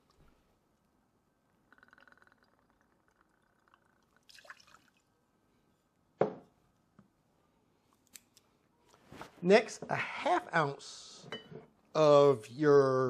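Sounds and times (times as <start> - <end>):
liquid glugging from bottle: 1.7 - 4.9
liquid splashing into glass: 1.7 - 5.1.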